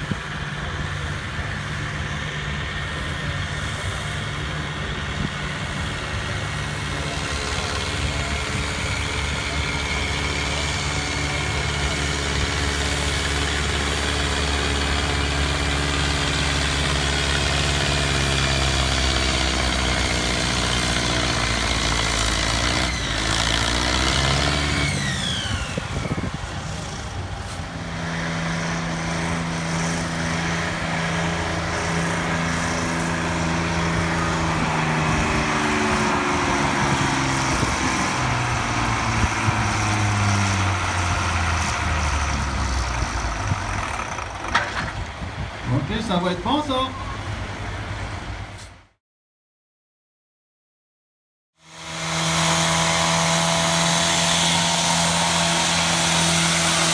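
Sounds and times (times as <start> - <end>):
tractor diesel engine running hard: 0.0 - 48.7, 51.6 - 56.9.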